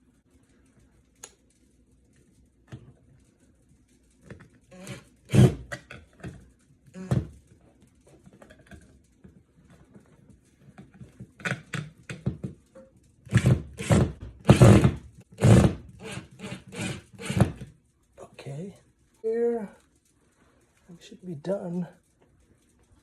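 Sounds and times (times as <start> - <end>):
screwdriver knocks and scrapes: 11.0 - 17.7.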